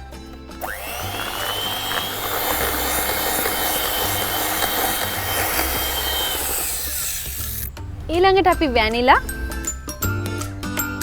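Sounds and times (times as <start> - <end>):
electric mixer whining: 0.6 - 7.7
beaters scraping bowl: 0.6 - 7.8.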